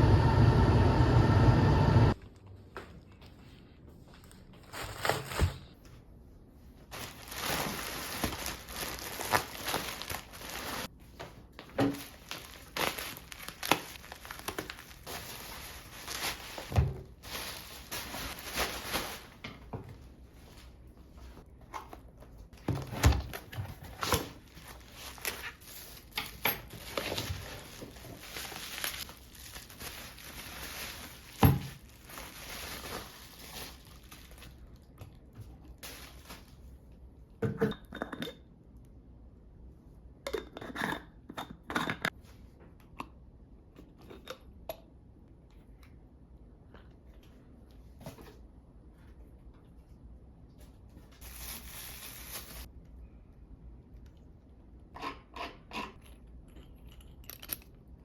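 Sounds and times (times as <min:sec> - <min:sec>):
packaging crinkling: 0:06.9 - 0:10.9, 0:12.0 - 0:19.4, 0:23.8 - 0:34.8, 0:35.8 - 0:36.5, 0:51.2 - 0:52.7.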